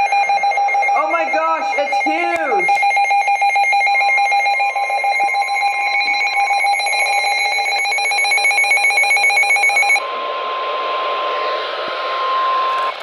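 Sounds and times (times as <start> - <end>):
two-tone alert alarm: 0.0 - 10.1
single steady alarm tone: 0.0 - 12.9
radio static: 1.0 - 2.8.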